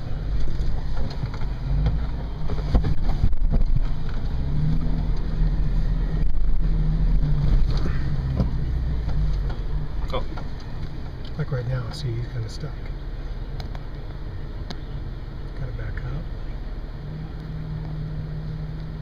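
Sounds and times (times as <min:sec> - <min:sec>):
vehicle knocks and rattles: 0:00.0 - 0:05.2, 0:06.2 - 0:11.5
engine working at low speed: 0:00.0 - 0:19.0.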